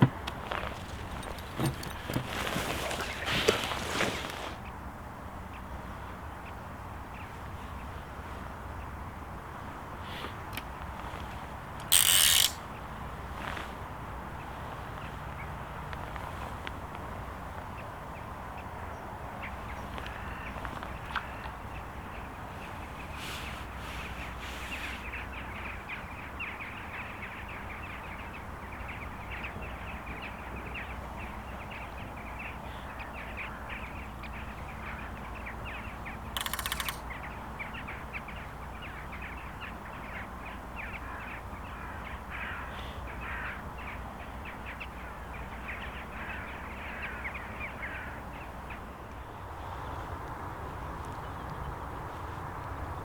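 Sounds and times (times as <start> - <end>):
birds making harsh calls: 34.4 - 38.2.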